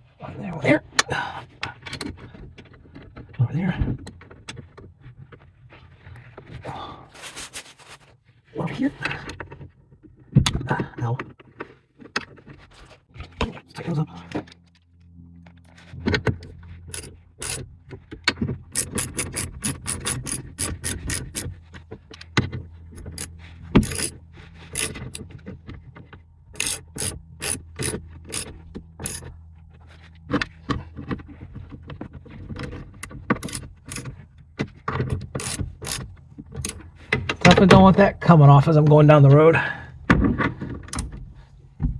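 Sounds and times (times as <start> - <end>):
ratchet wrench clicking: 16.9 - 17.6, 18.7 - 21.6, 23.0 - 25.2, 26.5 - 29.3, 33.4 - 34.1, 35.3 - 36.8.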